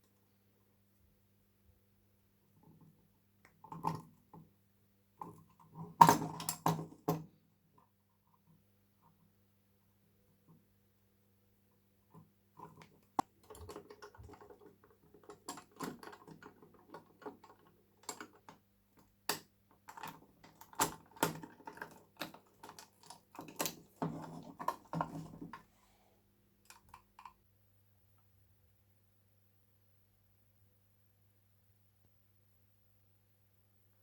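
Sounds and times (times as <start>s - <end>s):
small hard parts clicking: 12.1s - 25.6s
faint low hum: 21.2s - 34.0s.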